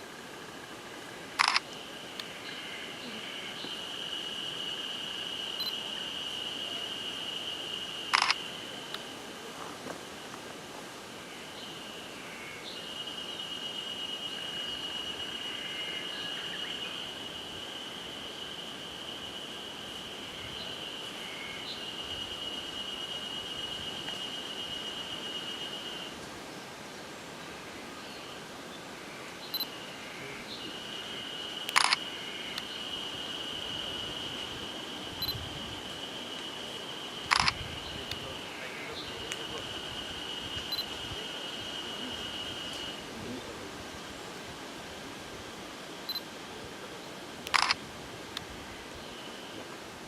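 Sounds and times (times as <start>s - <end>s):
outdoor hiss: 0.0s - 50.0s
insect trilling: 1.4s - 9.0s, 29.5s - 43.1s.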